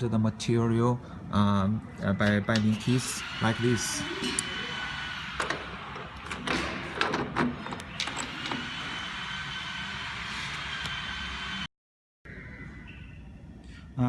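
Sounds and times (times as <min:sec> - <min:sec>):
steady background hum: 0:00.0 - 0:11.7.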